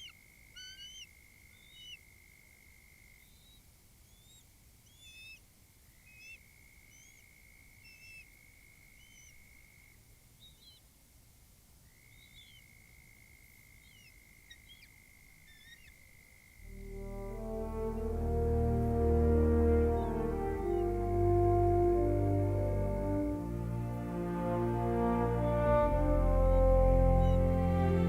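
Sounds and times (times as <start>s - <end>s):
birds chirping: 0.0s - 2.4s, 3.0s - 9.6s, 10.4s - 10.8s, 11.9s - 12.8s, 13.7s - 18.3s, 19.7s - 22.8s, 25.4s - 28.0s.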